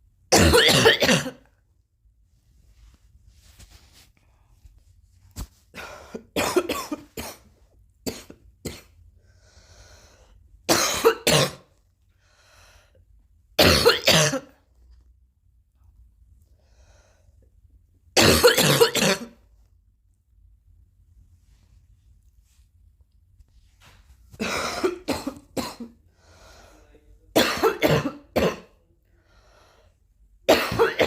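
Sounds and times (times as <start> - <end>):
person coughing: 0.3 - 1.5, 5.8 - 7.5, 8.1 - 9.0, 10.7 - 11.7, 13.6 - 14.6, 18.2 - 19.4, 24.3 - 26.0, 27.3 - 28.8, 30.5 - 31.0
faint breathing: 9.2 - 10.5, 12.1 - 13.1, 16.4 - 17.5, 26.0 - 27.2, 29.0 - 30.2.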